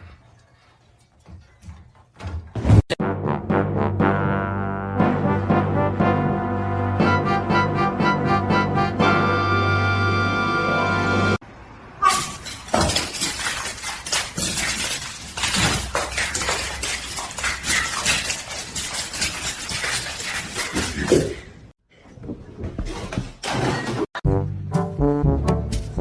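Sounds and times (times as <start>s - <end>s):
clatter of knocks and impacts: 12.3s - 20.1s.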